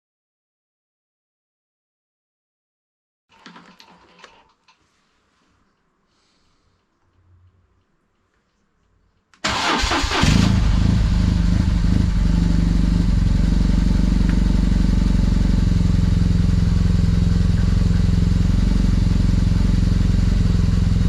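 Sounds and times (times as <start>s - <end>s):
motorcycle starter cranking: 9.4s - 11.0s
motorcycle engine idling: 10.5s - 21.0s.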